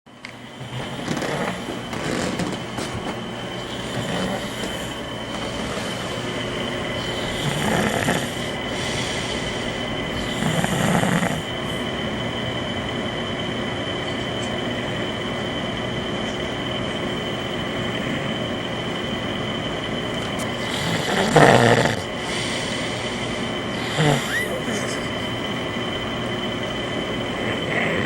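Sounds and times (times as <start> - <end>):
steady hum: 0.1 - 28.0
man snoring: 0.6 - 2.6, 3.5 - 11.9, 20.2 - 25.1, 27.4 - 28.0.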